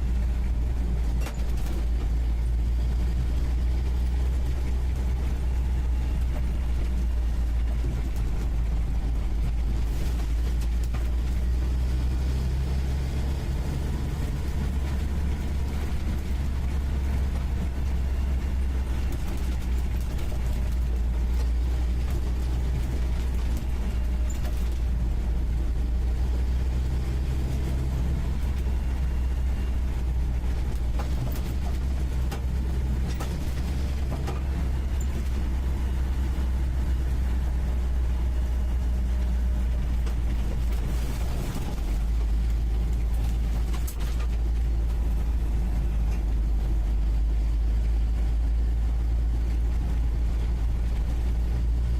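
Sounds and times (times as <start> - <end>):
engine droning from inside cab: 0.0 - 51.9.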